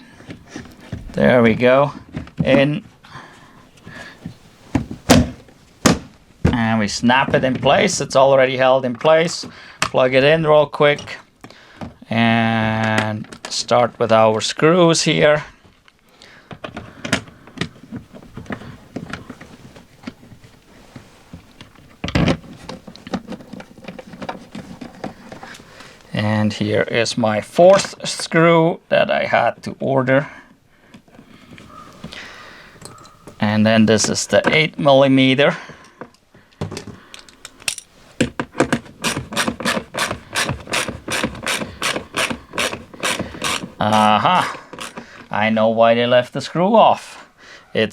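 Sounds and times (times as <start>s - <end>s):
hand tool clicking on door panel: 38.2s - 43.8s.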